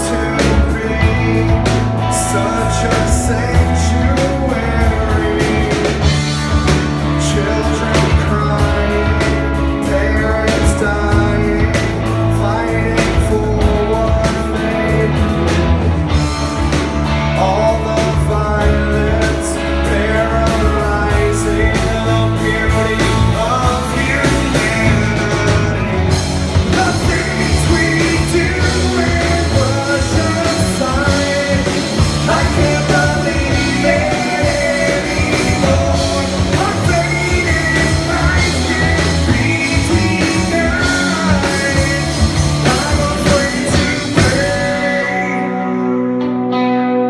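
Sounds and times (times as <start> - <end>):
drums: 0.0 - 47.0
electric guitar: 0.0 - 47.0
singing: 26.7 - 45.9.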